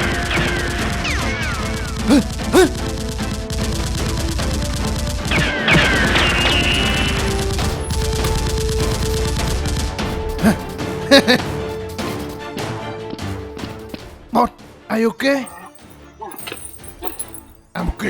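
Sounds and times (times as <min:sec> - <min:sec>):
background music: 0:00.0 - 0:18.0
automatic gunfire: 0:05.9 - 0:09.9.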